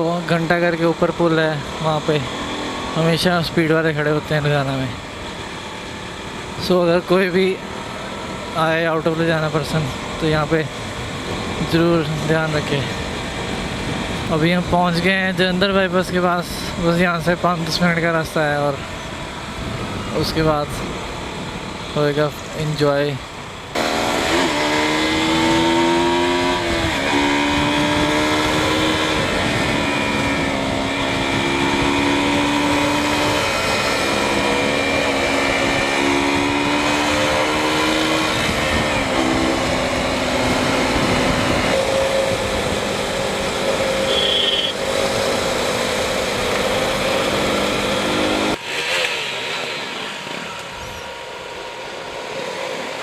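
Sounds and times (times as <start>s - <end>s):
wind and road noise: 0.0s - 53.0s
motorcycle engine shifting gears: 23.7s - 53.0s.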